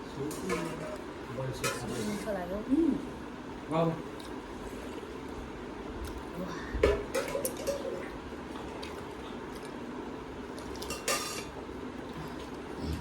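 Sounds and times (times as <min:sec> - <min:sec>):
food being chewed: 0:04.1 - 0:06.3, 0:07.5 - 0:13.0.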